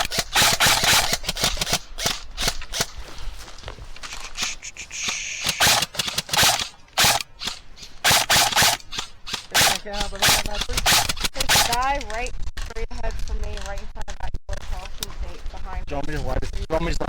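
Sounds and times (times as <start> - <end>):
airsoft guns firing: 0.0 - 3.0, 4.4 - 11.9.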